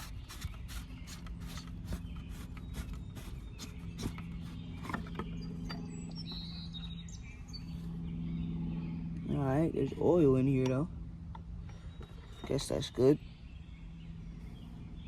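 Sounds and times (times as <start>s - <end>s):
faint high bird chirps: 0.0s - 10.0s
steady low hum: 0.0s - 15.0s.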